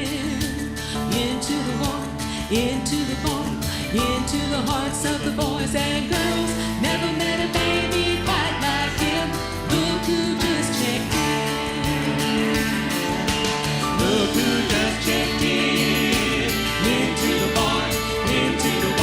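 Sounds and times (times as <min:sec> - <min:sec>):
instrumental accompaniment with beat: 0:00.0 - 0:19.0
gospel group singing in harmony: 0:05.2 - 0:19.0.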